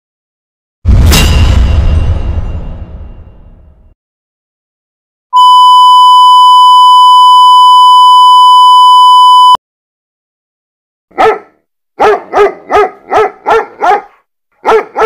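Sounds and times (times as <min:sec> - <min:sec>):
bang: 0:00.9 - 0:04.0
steady electronic beep tone: 0:05.4 - 0:09.6.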